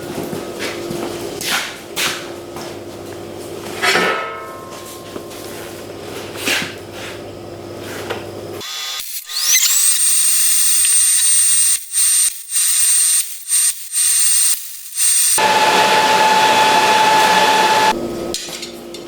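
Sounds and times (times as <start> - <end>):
power tool whining: 8.6 - 18.1.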